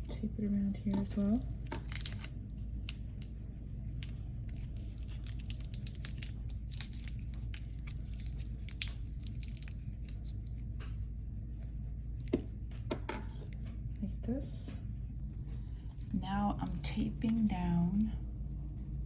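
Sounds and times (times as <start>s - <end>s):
steady low hum: 0.0s - 19.0s
tape crackling off the roll: 0.9s - 3.3s, 4.0s - 11.0s.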